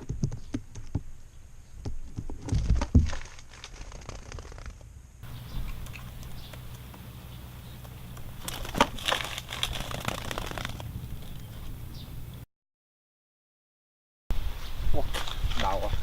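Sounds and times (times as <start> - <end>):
crinkling crackly rustles: 2.2 - 12.4
low steady hum: 4.9 - 12.4.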